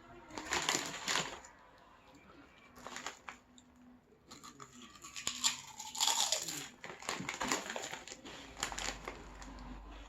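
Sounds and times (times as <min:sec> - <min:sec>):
potato chips crunching: 0:00.3 - 0:01.5, 0:04.3 - 0:10.0.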